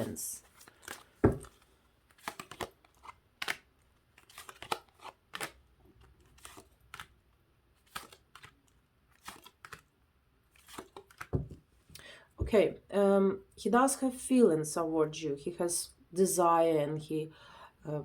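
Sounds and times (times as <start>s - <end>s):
cards being shuffled: 0.0s - 9.9s, 10.5s - 11.7s.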